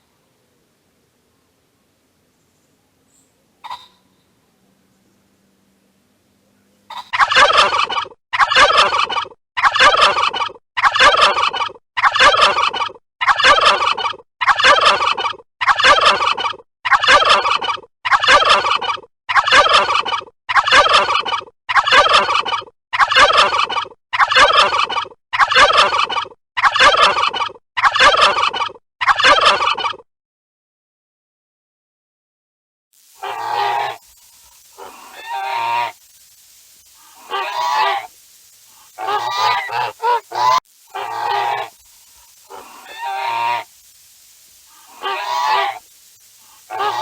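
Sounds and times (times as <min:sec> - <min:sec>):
bird call: 0:33.2 - 0:34.0, 0:37.0 - 0:38.1, 0:38.8 - 0:41.8, 0:44.7 - 0:45.9, 0:46.5 - 0:47.0.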